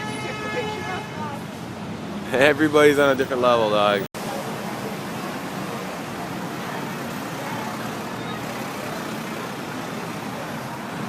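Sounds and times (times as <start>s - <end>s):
street traffic noise: 0.0s - 11.0s.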